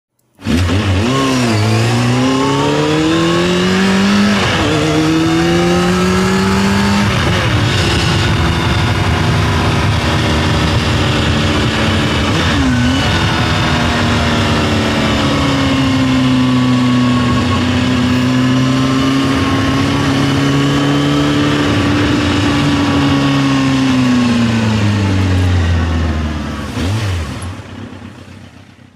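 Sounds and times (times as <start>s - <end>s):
motorcycle engine accelerating: 0.2s - 28.9s.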